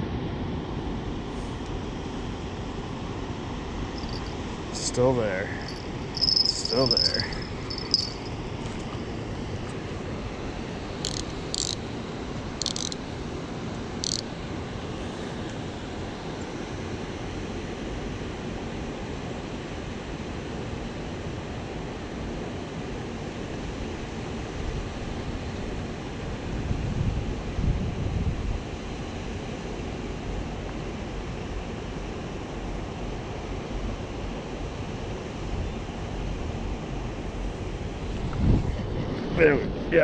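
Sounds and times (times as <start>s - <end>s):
short high-pitched ticks: 5.6s - 8.3s, 11.0s - 11.8s, 12.6s - 13.0s, 14.0s - 14.2s
wind buffeting microphone: 38.1s - 40.0s.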